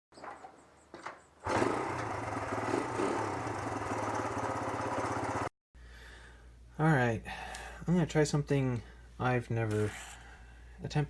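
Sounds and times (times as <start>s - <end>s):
small engine running: 1.4s - 5.5s.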